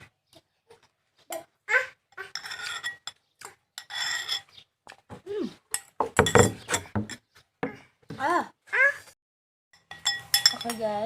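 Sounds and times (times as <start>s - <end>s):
cutlery clinking against a dish: 2.2s - 4.6s, 9.8s - 10.9s.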